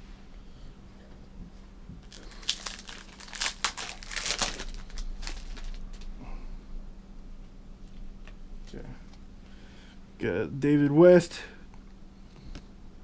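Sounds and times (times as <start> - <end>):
wrapper crinkling and tearing: 2.0 - 6.1.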